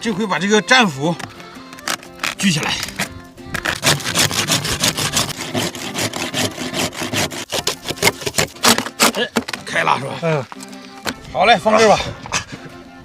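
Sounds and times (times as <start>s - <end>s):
hand saw cutting through bone: 3.6s - 9.2s.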